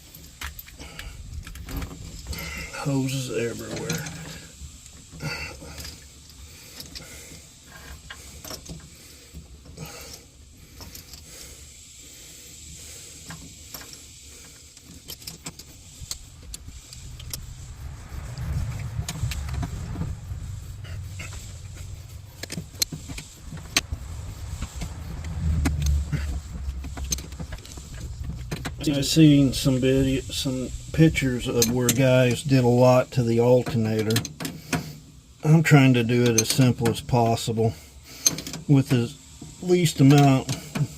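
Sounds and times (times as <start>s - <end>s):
low rumble: 15.7s - 32.8s.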